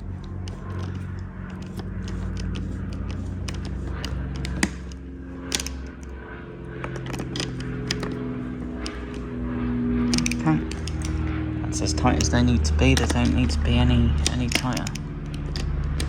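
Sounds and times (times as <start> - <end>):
steady low hum: 0.0 - 16.0
ratchet clicks and metal clinks: 6.9 - 9.3, 10.1 - 11.3, 12.0 - 16.0.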